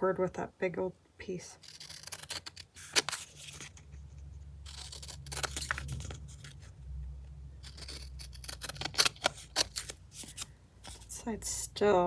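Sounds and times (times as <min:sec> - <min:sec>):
scissors cutting paper: 0:01.6 - 0:03.8, 0:04.7 - 0:06.6, 0:07.6 - 0:11.2.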